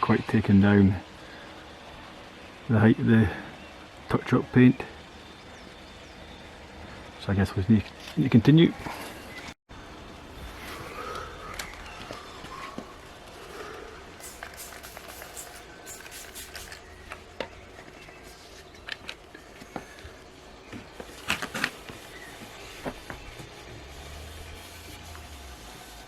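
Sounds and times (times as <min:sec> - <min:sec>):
sandpaper rubbing on painted panel: 0:21.0 - 0:26.0.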